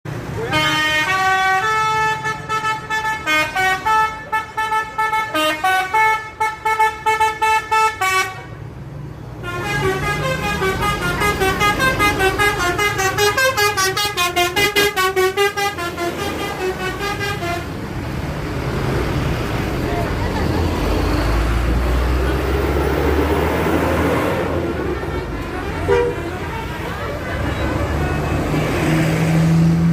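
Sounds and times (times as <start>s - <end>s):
multi-tone bus horn tune: 0.3s - 8.6s, 9.4s - 17.9s, 23.7s - 29.6s.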